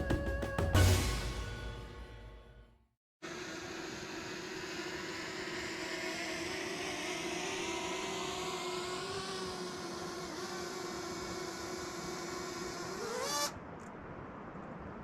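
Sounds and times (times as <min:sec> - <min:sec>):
drone propellers whirring: 0:03.2 - 0:13.6.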